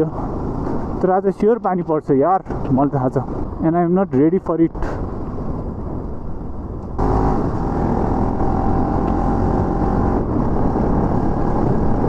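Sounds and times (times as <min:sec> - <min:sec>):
motorcycle engine running: 0:07.0 - 0:12.0.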